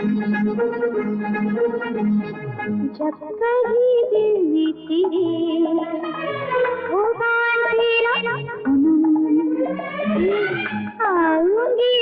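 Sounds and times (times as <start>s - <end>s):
film song with sliding melody: 0.0s - 3.7s, 5.0s - 11.0s
low musical accompaniment: 0.0s - 11.8s.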